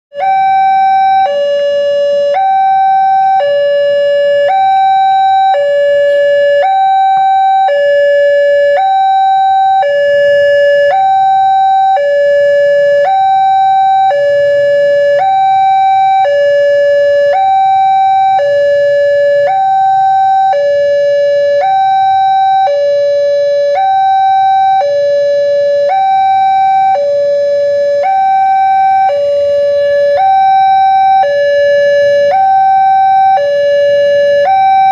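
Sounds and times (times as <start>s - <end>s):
two-tone level crossing siren: 0.1s - 34.9s.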